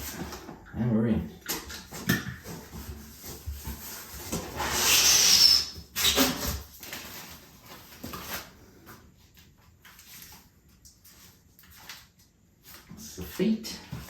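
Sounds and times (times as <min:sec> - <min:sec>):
packaging rustling: 0:06.1 - 0:08.6.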